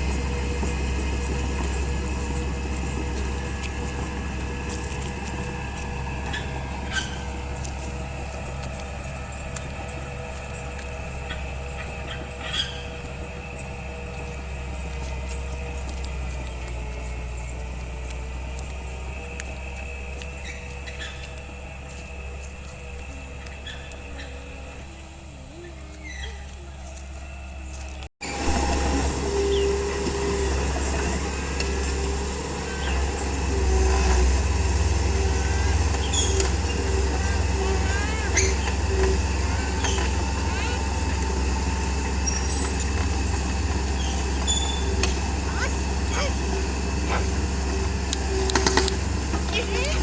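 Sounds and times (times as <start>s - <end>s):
bulldozer diesel engine rumbling: 0.0s - 50.0s
short squeak: 44.0s - 45.7s.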